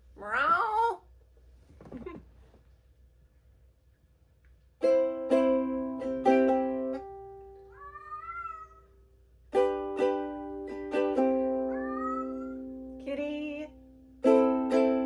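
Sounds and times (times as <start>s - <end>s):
cat meowing: 0.2s - 1.0s, 7.7s - 9.0s, 11.6s - 12.7s
ukulele chords strummed: 4.8s - 7.6s, 9.5s - 15.0s.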